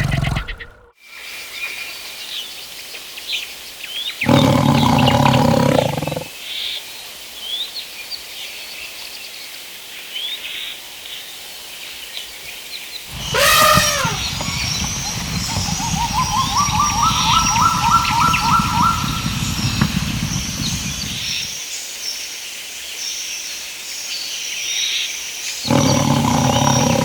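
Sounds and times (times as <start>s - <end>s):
big cat roaring: 0.0s - 0.9s, 4.2s - 6.3s, 13.1s - 17.6s, 25.7s - 27.0s
birds chirping: 0.0s - 0.9s, 4.2s - 6.3s, 13.1s - 21.6s, 25.5s - 27.0s
loud pitched animal call: 0.0s - 0.9s, 13.1s - 21.4s.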